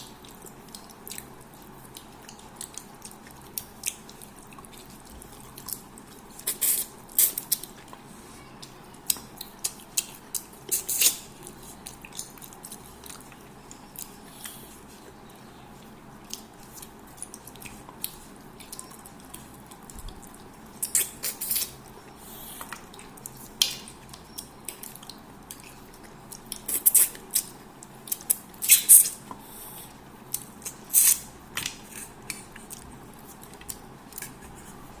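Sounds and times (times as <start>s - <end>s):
wet mouth chewing sounds: 0.1s - 8.0s, 8.6s - 15.1s, 15.8s - 29.2s.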